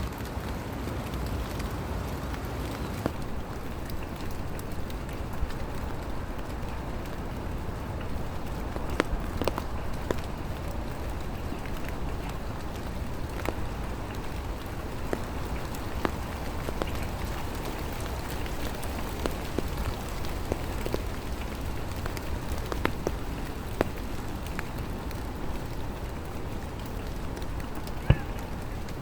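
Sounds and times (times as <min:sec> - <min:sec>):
rain hissing: 0:00.0 - 0:29.0
raindrops ticking: 0:00.0 - 0:29.0.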